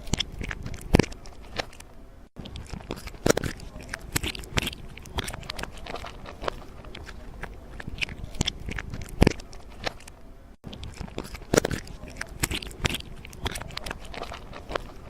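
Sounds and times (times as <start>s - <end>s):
crunching and clicking: 0.0s - 15.0s.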